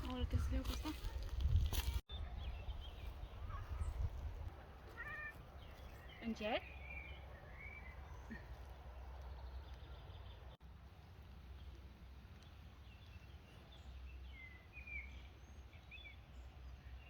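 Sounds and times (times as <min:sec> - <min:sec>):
wind rumble on microphone: 0:00.0 - 0:04.6.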